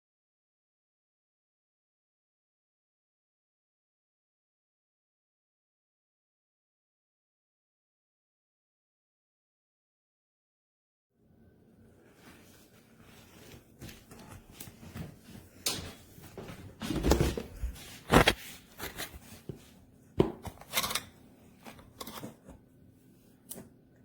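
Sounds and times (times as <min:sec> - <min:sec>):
rustling of handled objects: 0:12.0 - 0:19.9
clicks and knocks of containers: 0:20.2 - 0:22.5.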